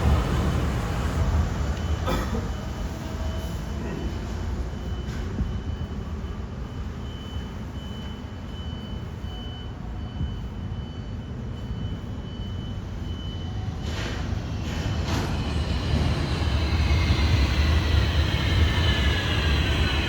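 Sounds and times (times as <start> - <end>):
train cabin low rumble: 0.0 - 20.0
thin high whine: 11.6 - 20.0
rush of noise: 14.5 - 20.0.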